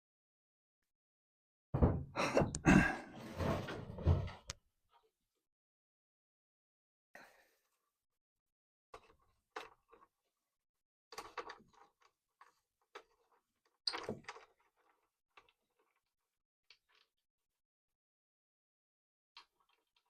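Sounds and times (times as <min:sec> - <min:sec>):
small parts clicking and knocking: 0:11.1 - 0:17.2, 0:19.4 - 0:20.0.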